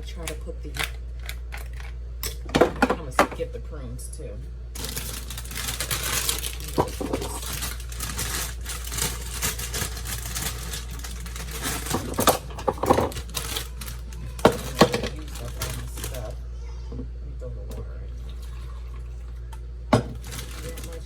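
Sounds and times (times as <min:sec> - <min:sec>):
rustling: 0:04.8 - 0:16.4, 0:20.1 - 0:21.0.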